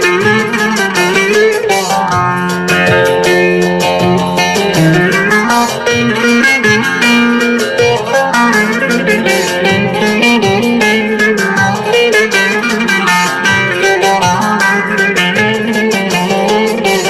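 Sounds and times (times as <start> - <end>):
band with steady beat: 0.0 - 17.0
plucked string melody: 0.0 - 17.0.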